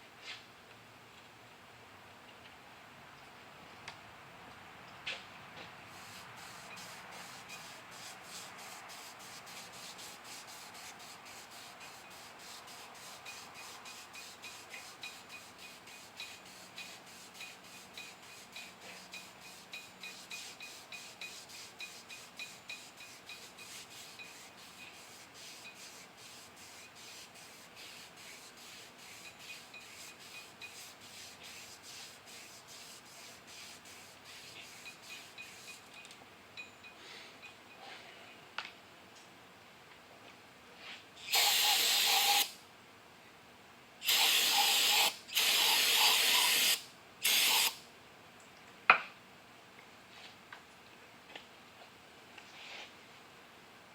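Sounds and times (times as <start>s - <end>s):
shoestring rubbing on metal shaft: 6.0s - 35.9s.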